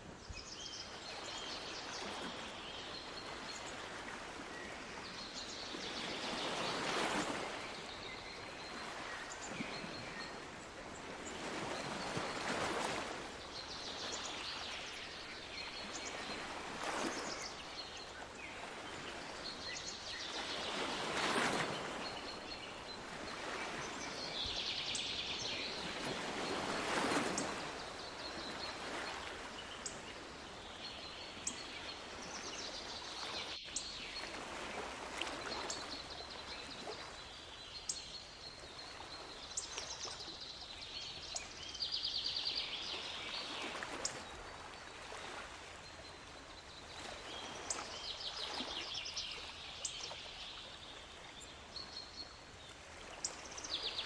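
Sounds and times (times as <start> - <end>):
songbirds chirping and trilling: 0.2 - 54.0
sea waves washing in: 1.0 - 37.3.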